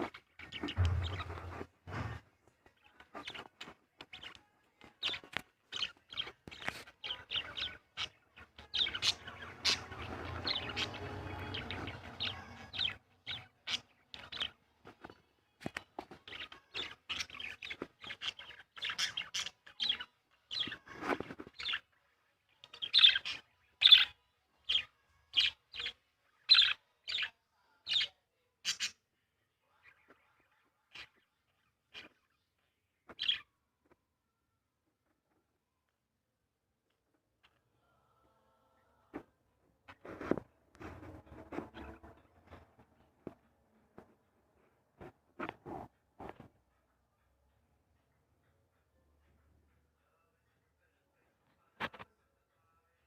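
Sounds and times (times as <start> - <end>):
birds chirping: 0.0 - 27.3, 33.1 - 33.5, 39.9 - 43.4
rustling noise: 0.4 - 2.3, 39.9 - 46.6.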